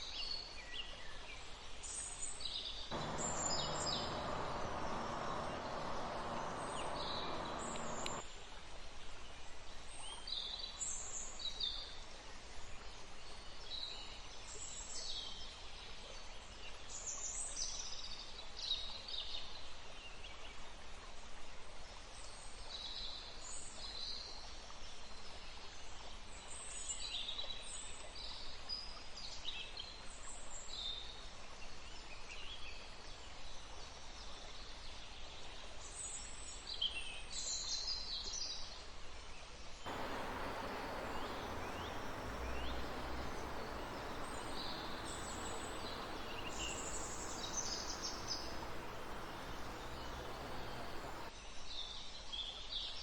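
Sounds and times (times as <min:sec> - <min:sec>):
birds chirping: 0:02.9 - 0:08.2, 0:39.9 - 0:51.3
low rushing noise: 0:02.9 - 0:08.2, 0:39.9 - 0:51.3
river water rushing: 0:02.9 - 0:08.2, 0:39.9 - 0:51.3.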